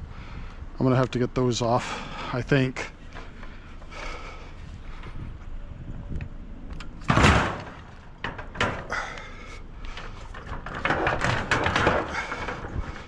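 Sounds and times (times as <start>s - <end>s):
scrap clattering: 6.8s - 13.0s
scrap metal clanking and thumping: 6.8s - 13.0s.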